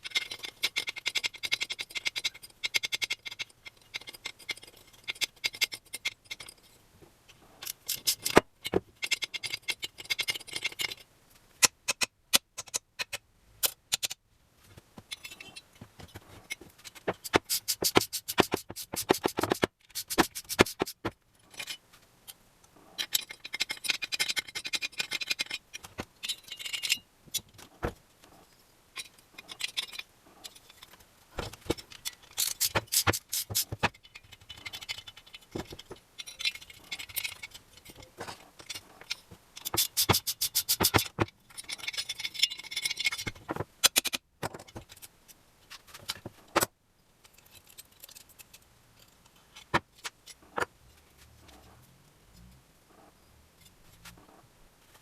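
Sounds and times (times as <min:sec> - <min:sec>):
metal tools clinking: 0:15.1 - 0:21.8, 0:22.9 - 0:27.5, 0:28.3 - 0:43.6
scraping on metal: 0:15.1 - 0:21.8, 0:22.8 - 0:43.7.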